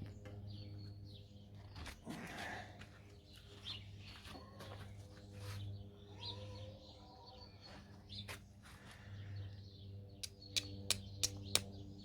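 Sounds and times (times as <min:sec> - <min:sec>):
birds chirping: 0:09.2 - 0:12.0
steel striker clicking on flint: 0:10.2 - 0:11.7.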